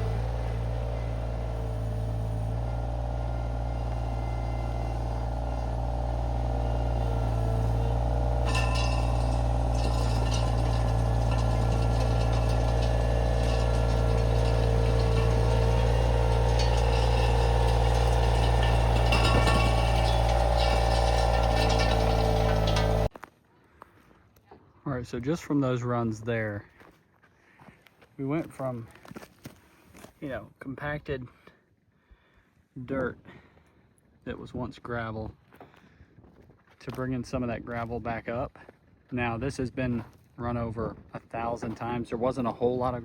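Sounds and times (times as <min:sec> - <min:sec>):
hydraulic whine: 0:00.0 - 0:23.1
skid steer engine running: 0:00.0 - 0:23.1
gravel rattling and clinking: 0:00.0 - 0:23.3.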